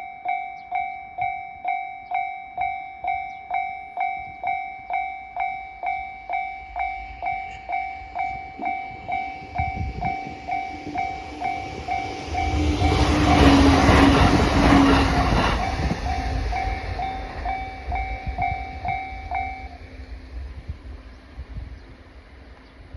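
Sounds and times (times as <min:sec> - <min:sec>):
level crossing warning bell: 0:00.0 - 0:20.4
train rumble and wheel clatter: 0:05.4 - 0:22.9.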